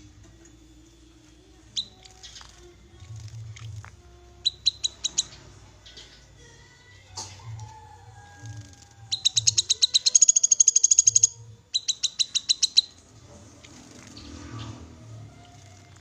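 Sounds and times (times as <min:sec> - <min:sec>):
bird trills of chip notes: 0:08.7 - 0:13.0.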